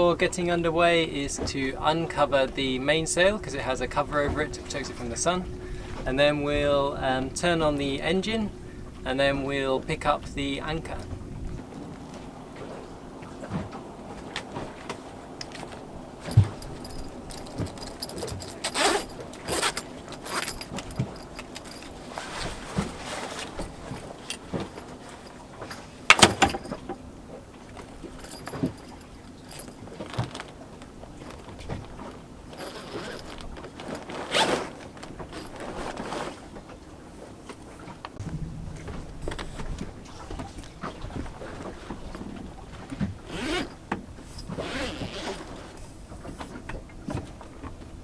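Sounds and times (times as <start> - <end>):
zipper being undone: 34.3 - 34.7, 43.3 - 43.7, 44.6 - 45.7.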